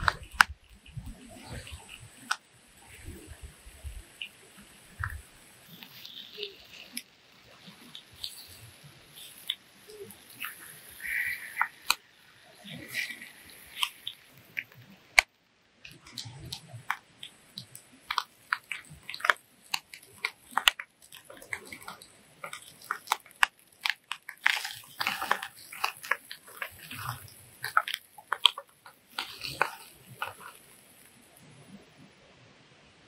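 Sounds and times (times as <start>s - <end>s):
person chewing crunchy food: 0.0s - 31.3s.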